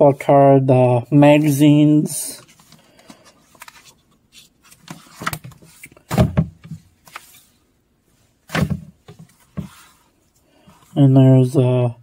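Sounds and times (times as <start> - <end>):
paper rustling: 2.3 - 7.6.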